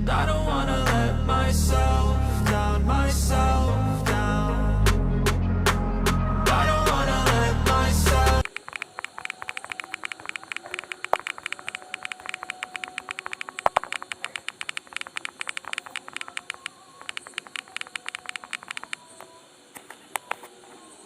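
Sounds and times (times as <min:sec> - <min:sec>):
phone keyboard clicks: 0:08.4 - 0:20.5.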